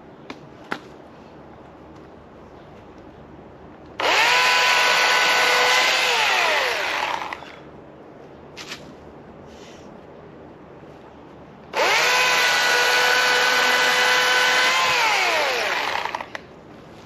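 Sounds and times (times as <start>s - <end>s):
chainsaw revving: 4.0s - 7.4s, 11.8s - 16.3s.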